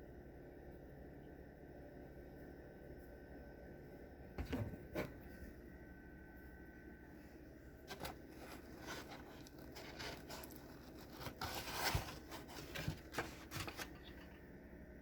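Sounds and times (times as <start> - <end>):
scraping rustle: 7.9 - 14.4.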